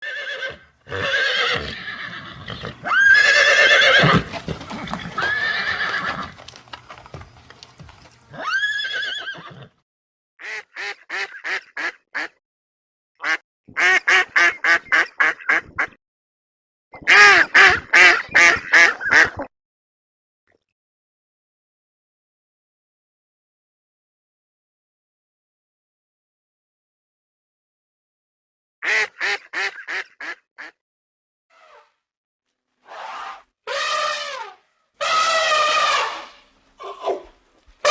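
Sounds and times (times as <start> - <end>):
horses whinnying: 0.0 - 9.8, 32.9 - 37.9
horse short rapid calls: 32.9 - 37.9.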